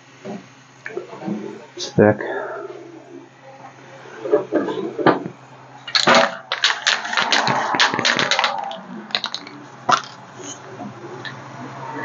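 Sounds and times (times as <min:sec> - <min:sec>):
sharp metallic clicks and clatter: 0:05.9 - 0:10.6.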